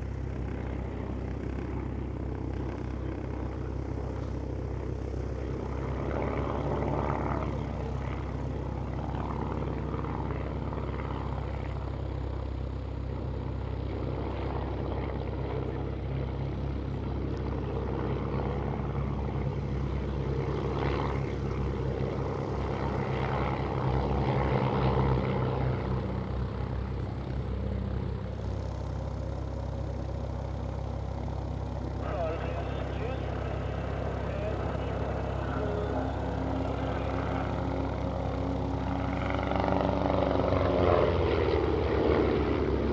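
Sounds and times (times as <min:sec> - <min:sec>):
propeller engine running: 0:00.0 - 0:42.9.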